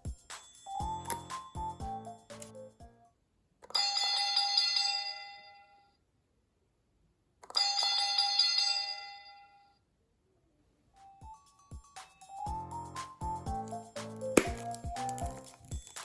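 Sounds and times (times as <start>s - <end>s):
toy playing bell-like chime: 0.0s - 2.8s, 11.3s - 13.0s.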